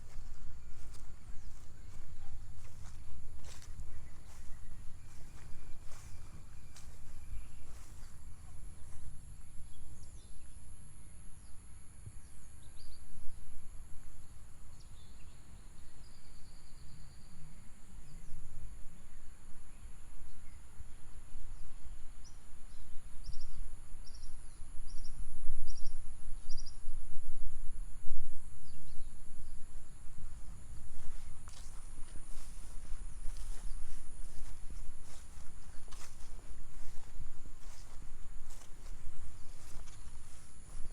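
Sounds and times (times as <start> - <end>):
high insect drone: 17.5 - 40.9.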